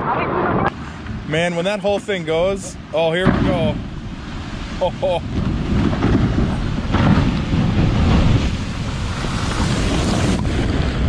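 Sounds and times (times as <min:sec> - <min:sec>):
low rumbling: 0:00.0 - 0:11.0
wind buffeting microphone: 0:00.7 - 0:11.0.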